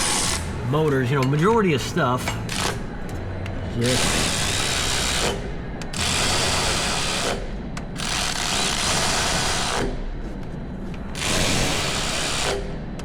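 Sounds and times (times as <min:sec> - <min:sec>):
power ratchet running bolts: 0:02.3 - 0:02.8, 0:03.8 - 0:07.4, 0:11.2 - 0:12.7.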